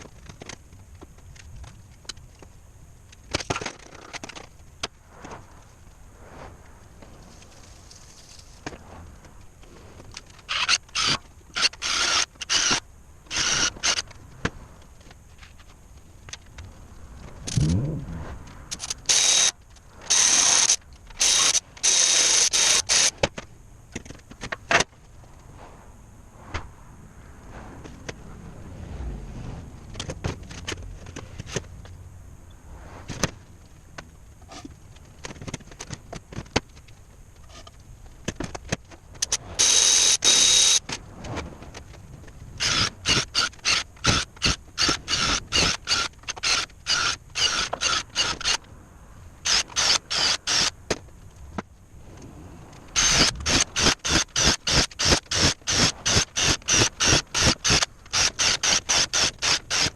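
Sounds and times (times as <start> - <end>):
power tool whining: 10.5 - 14.1, 18.7 - 19.5, 20.1 - 23.3, 39.6 - 40.8, 42.6 - 48.6, 49.4 - 50.7, 53.0 - 59.9.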